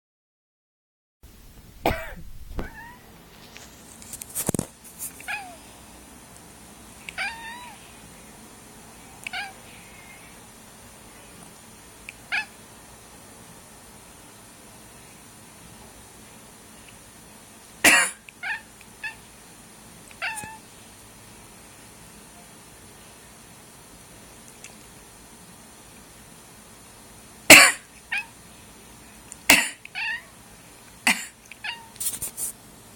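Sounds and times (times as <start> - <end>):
cat coughing: 1.8 - 2.9, 17.8 - 18.2, 27.5 - 27.9, 29.5 - 29.9, 31.0 - 31.4
cat meowing: 2.6 - 3.1, 5.3 - 5.6, 7.1 - 7.8, 9.2 - 9.6, 12.3 - 12.5, 18.4 - 19.2, 20.2 - 20.6, 28.1 - 28.3, 29.9 - 30.4, 31.6 - 32.0.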